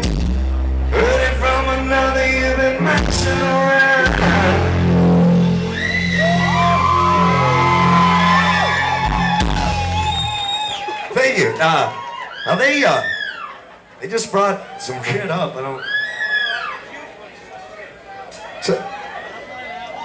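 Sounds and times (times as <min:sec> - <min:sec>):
live rock band playing: 0:00.0 - 0:10.4
sustained bass notes: 0:00.0 - 0:10.4
person singing: 0:00.9 - 0:05.2.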